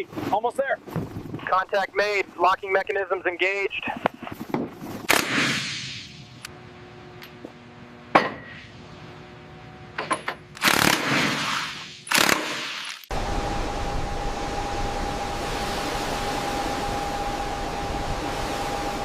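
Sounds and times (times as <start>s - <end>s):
low mechanical hum: 0.0s - 19.0s
loud rushing hisses: 5.1s - 6.4s, 11.1s - 19.0s.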